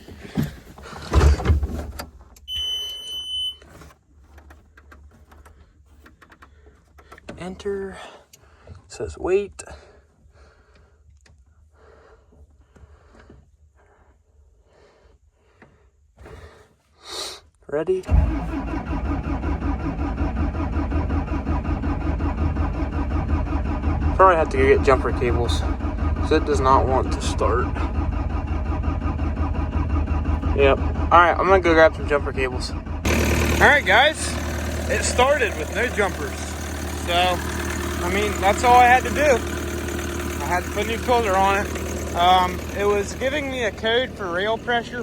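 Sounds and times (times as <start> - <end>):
diesel engine cranking: 0.0 - 13.3, 17.9 - 45.0.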